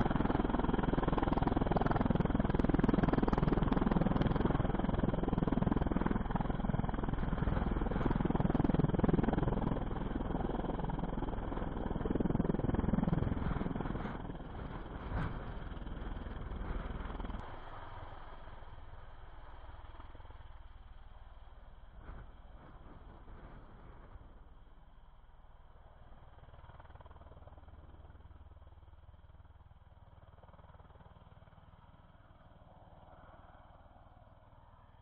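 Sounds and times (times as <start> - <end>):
engine rumble: 0.0 - 24.8.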